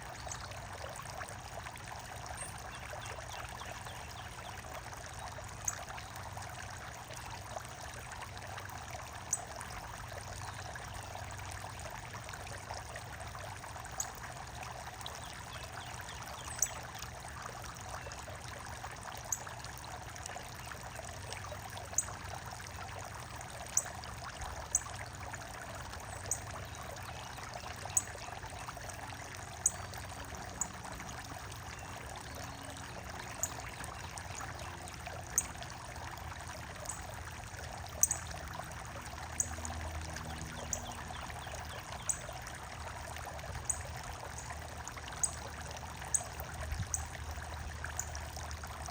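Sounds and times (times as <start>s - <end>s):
running water trickling: 0.0s - 48.9s.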